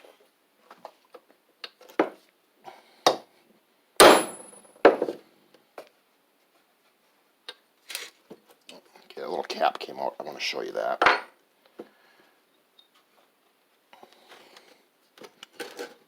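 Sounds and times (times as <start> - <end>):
hammer striking metal: 4.0 - 4.7.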